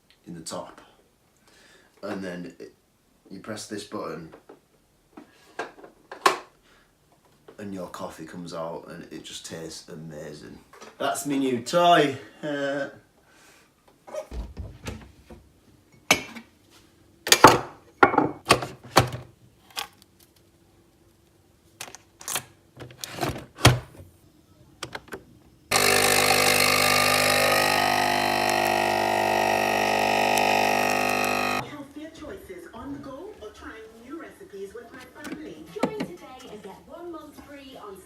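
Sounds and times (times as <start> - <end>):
espresso pump buzzing: 25.7 - 31.6.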